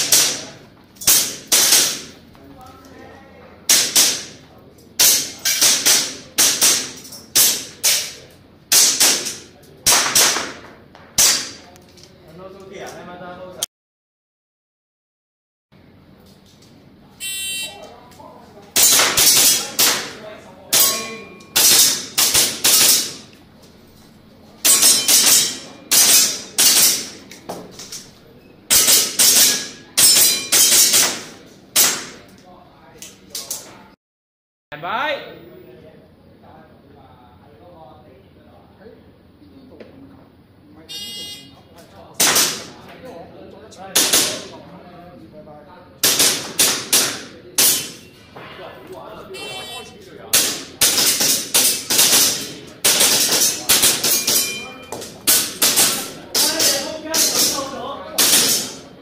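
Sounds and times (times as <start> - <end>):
airsoft pistol shots: 0.0 - 0.5, 1.1 - 2.2, 3.7 - 4.4, 5.0 - 11.6, 18.8 - 21.0, 21.6 - 23.2, 28.7 - 32.2, 42.2 - 42.8, 44.0 - 44.5, 46.0 - 48.0, 50.3 - 54.5.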